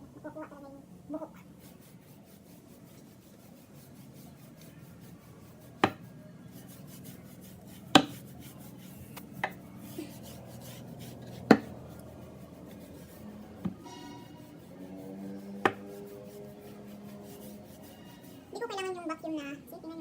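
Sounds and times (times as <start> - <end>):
hand brush scrubbing carpet: 1.2 - 18.7
sharp knocks: 5.8 - 6.0.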